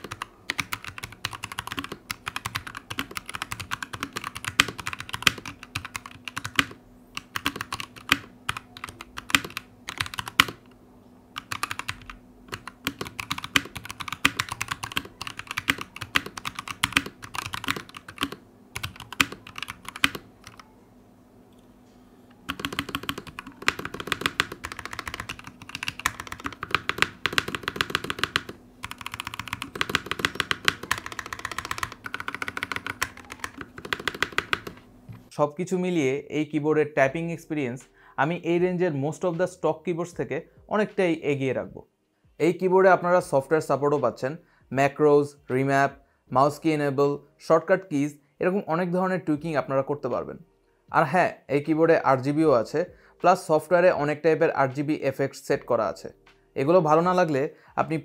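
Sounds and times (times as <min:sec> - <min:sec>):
mechanical keyboard typing: 0:00.0 - 0:10.7, 0:11.4 - 0:20.7, 0:22.5 - 0:34.9.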